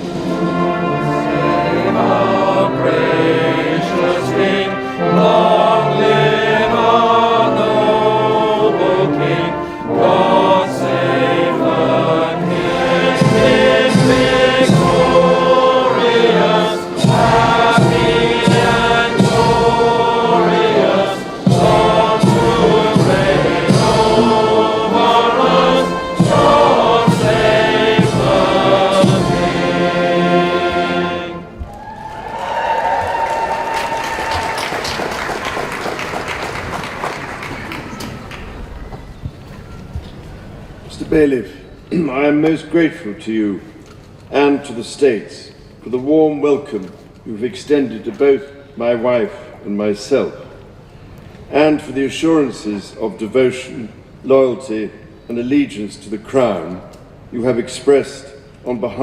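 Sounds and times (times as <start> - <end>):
choir singing: 0.0 - 31.6.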